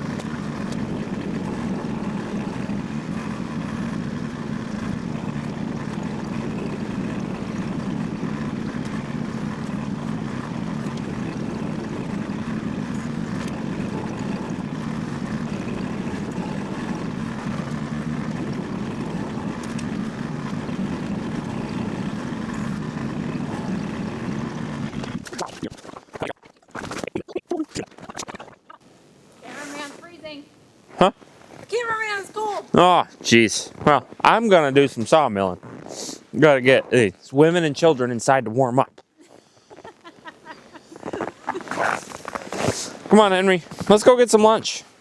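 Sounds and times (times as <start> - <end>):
engine droning steadily: 0.0 - 28.8.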